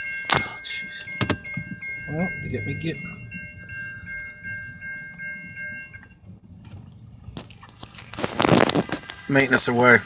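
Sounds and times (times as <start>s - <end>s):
railroad crossing bell ringing: 0.0s - 7.7s.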